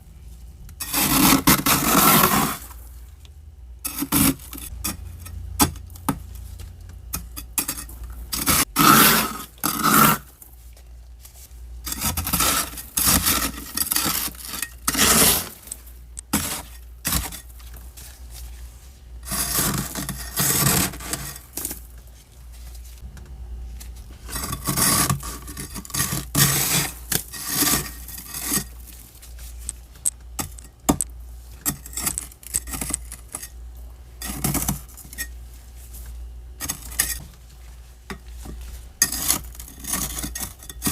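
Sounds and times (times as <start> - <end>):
frost scraping in freezer: 0.8 - 3.2, 3.9 - 5.2, 6.4 - 30.8, 31.4 - 40.9.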